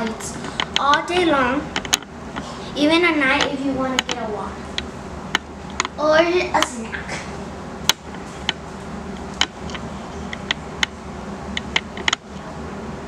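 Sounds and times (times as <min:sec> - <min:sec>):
steady low hum: 0:00.0 - 0:13.0
sharp clicks and light taps: 0:03.4 - 0:04.2, 0:11.6 - 0:12.2.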